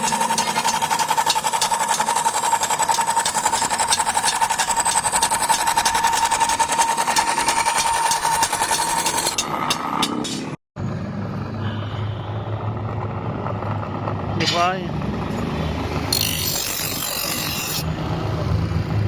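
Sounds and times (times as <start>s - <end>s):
rapid machine hammering: 0.0s - 10.4s
steady machine whine: 0.0s - 18.9s.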